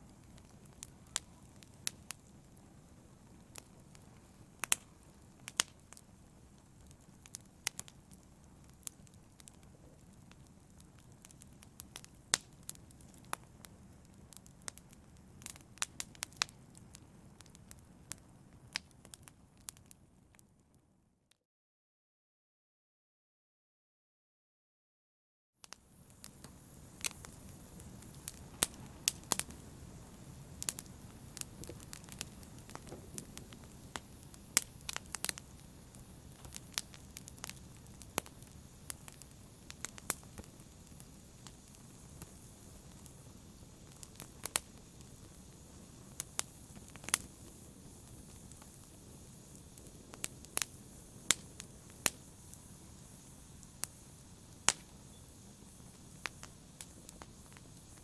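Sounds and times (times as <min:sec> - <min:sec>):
fire crackling and popping: 0:00.0 - 0:20.5, 0:25.6 - 0:58.0
rush of flames: 0:25.9 - 0:58.0.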